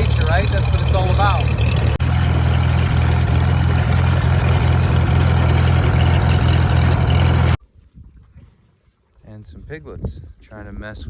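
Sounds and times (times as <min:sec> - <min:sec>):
tractor engine running: 0:00.0 - 0:07.6.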